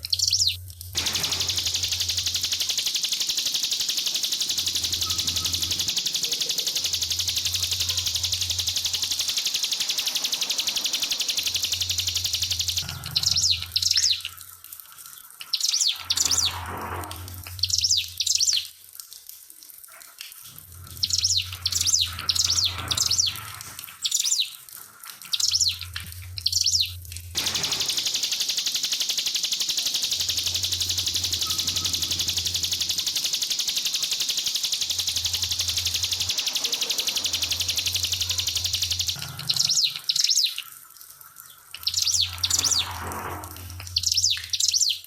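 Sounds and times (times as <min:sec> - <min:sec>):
bird chattering song: 0:00.0 - 0:14.4, 0:15.4 - 0:16.7, 0:17.4 - 0:18.7, 0:21.0 - 0:24.6, 0:25.2 - 0:40.7, 0:41.8 - 0:43.0, 0:43.7 - 0:45.0
trickling water hiss: 0:00.0 - 0:44.7
low hum: 0:25.6 - 0:39.8.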